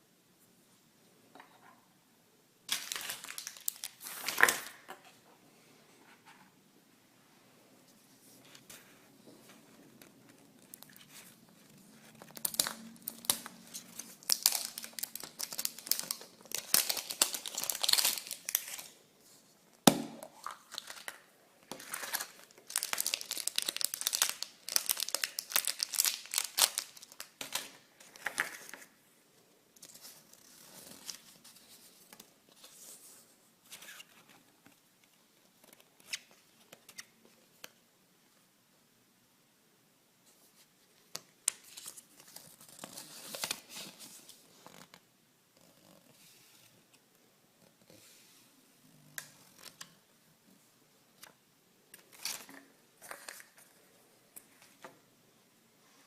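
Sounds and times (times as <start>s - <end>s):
wrapping crinkling: 2.7s - 4.9s, 12.0s - 19.0s, 20.4s - 28.8s.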